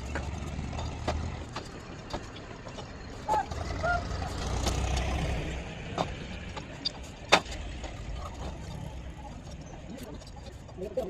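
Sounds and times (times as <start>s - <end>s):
vehicle engine rumbling low: 0.0s - 11.0s.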